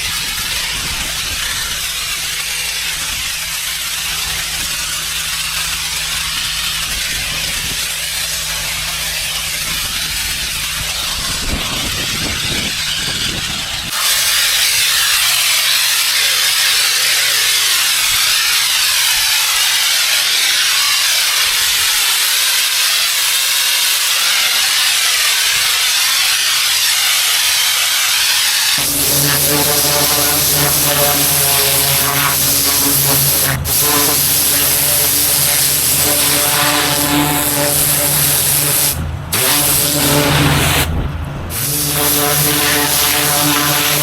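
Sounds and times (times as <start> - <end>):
machine engine drone: 0.0 - 14.4, 27.8 - 44.0
high-pressure water spray hiss: 0.0 - 44.0.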